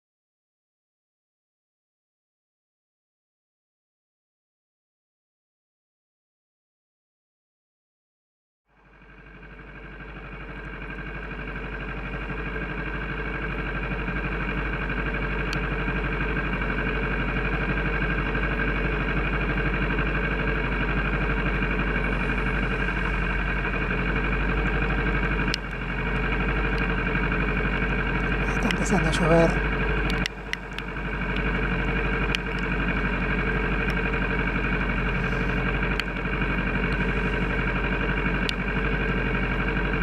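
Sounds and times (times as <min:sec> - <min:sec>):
motorcycle engine running: 0:08.7 - 0:40.0
click: 0:25.5 - 0:25.8, 0:30.0 - 0:31.5, 0:32.3 - 0:32.7, 0:35.9 - 0:36.1.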